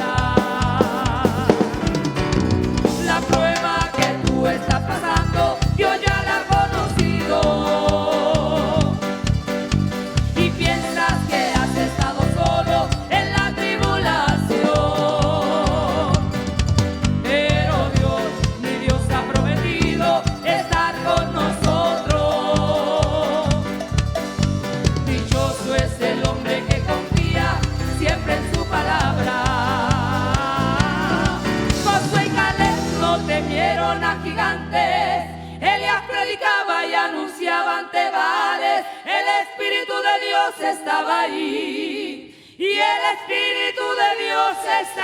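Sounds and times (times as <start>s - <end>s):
drum kit: 0.0s - 35.1s
bass: 0.0s - 36.4s
gospel choir singing: 0.0s - 45.0s.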